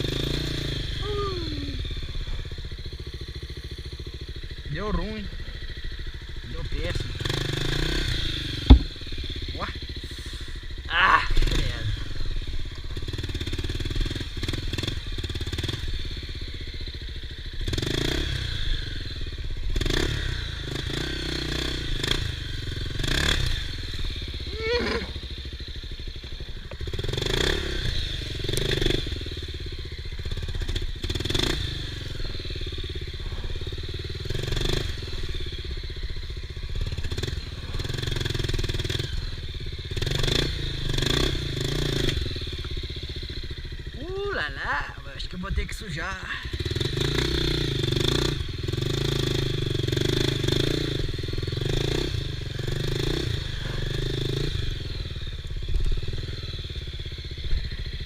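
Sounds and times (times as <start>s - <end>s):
motorcycle engine revving: 0.0s - 58.0s
knocks and clatter from motorcycle: 8.5s - 9.4s, 26.1s - 27.5s.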